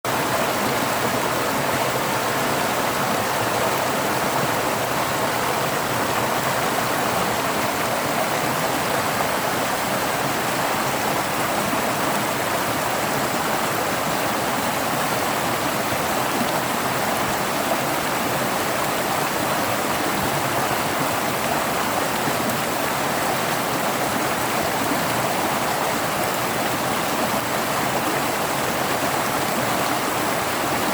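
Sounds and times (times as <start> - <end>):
stream rushing over rocks: 0.1 - 30.9.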